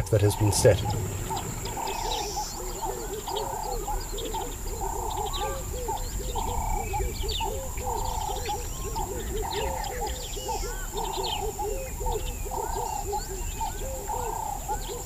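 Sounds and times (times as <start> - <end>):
high chirps: 0.0 - 10.8
high-pitched insect drone: 0.3 - 14.8.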